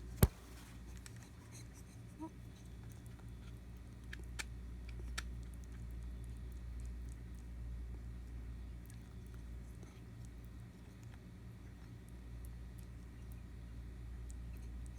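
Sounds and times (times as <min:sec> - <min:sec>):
rabbit teeth squeaking and clicking: 0:00.0 - 0:07.5.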